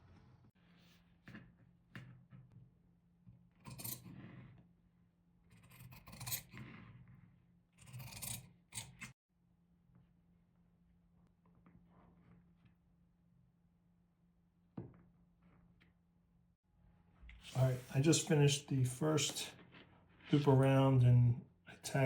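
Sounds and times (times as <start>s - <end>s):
scissors snipping fabric: 3.6s - 4.1s, 5.6s - 6.6s, 7.8s - 9.1s.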